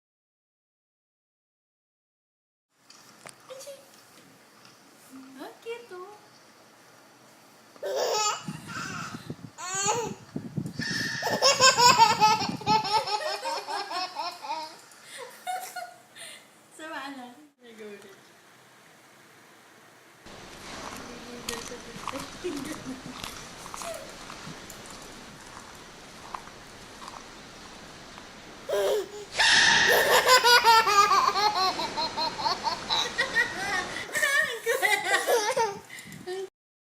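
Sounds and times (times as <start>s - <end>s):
low background noise: 2.7s - 36.5s
small child laughing: 7.8s - 10.2s, 10.8s - 16.1s, 28.7s - 36.5s.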